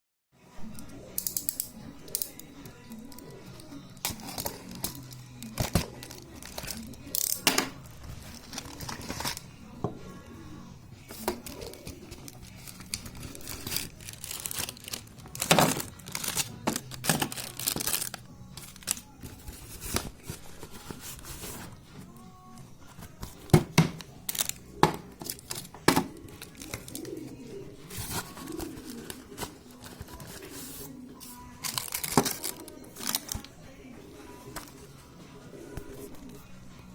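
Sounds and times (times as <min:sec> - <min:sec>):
plastic packaging crinkling and tearing: 0:03.1 - 0:09.5, 0:11.1 - 0:21.7, 0:23.0 - 0:27.3, 0:27.9 - 0:33.6.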